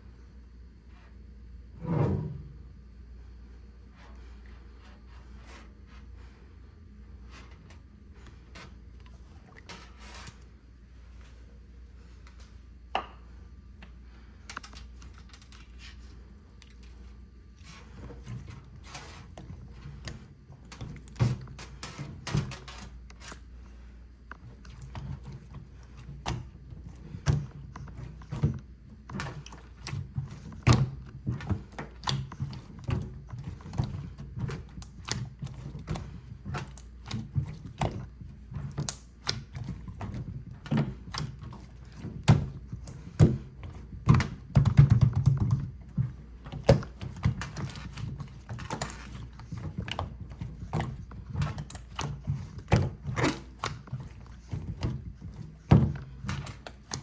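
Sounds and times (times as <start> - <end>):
hands squishing slime: 24.2 - 57.0.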